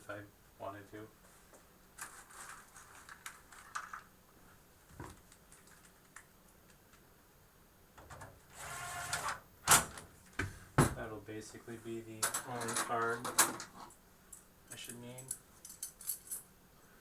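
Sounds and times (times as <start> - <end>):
knock on computer case: 10.4 - 11.0.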